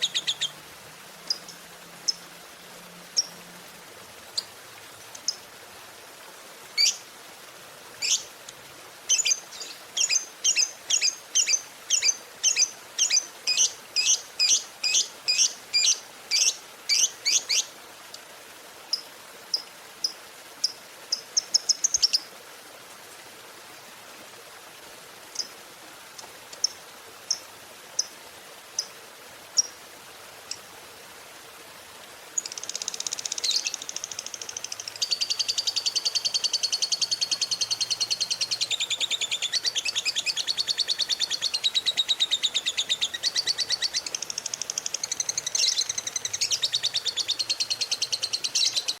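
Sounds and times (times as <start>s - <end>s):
lovebird chirping: 0.0s - 0.6s, 6.8s - 7.0s, 8.0s - 8.2s, 9.1s - 17.6s, 32.4s - 49.0s.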